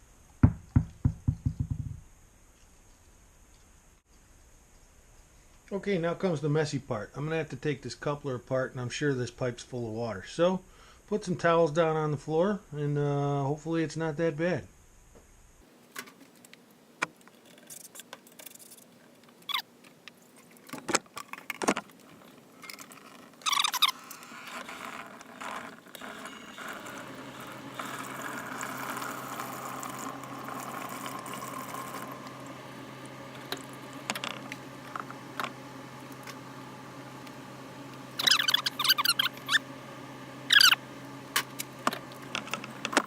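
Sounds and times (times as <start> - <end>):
low steady hum: 19.0 - 43.0
water rushing out of pipe: 26.0 - 32.3.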